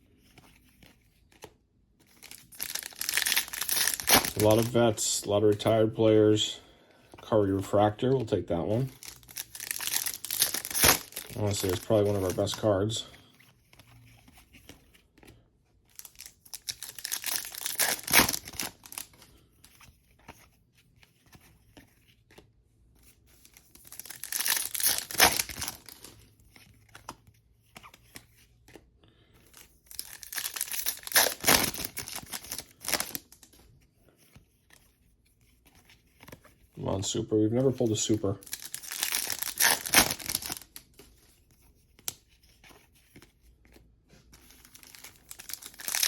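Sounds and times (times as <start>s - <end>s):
wrappers ripping and crumpling: 2.2s - 4.8s, 8.0s - 13.0s, 15.9s - 19.3s, 23.5s - 26.2s, 29.9s - 33.5s, 37.6s - 41.0s, 44.4s - 46.0s.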